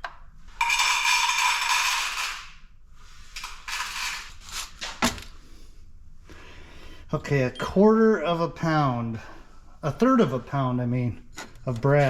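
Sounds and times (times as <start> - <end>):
brass scrap rattling and clattering: 0.6 - 2.6.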